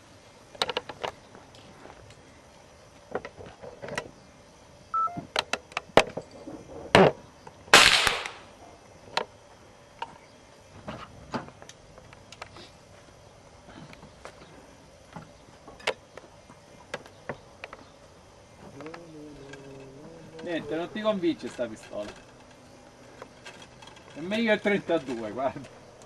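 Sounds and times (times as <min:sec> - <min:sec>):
handgun shot: 0:07.8 - 0:08.5.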